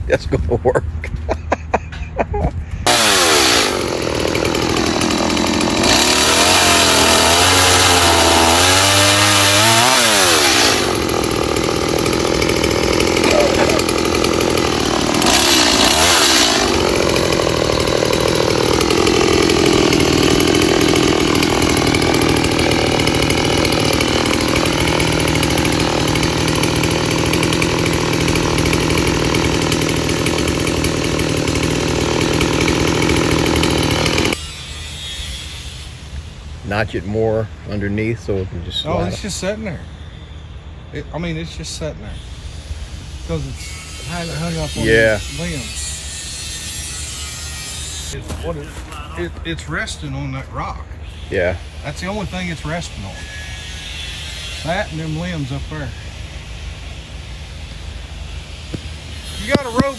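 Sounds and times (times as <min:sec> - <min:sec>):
chainsaw cutting wood: 0:02.8 - 0:35.1, 0:38.9 - 0:39.2, 0:43.5 - 0:50.0, 0:51.3 - 0:59.9.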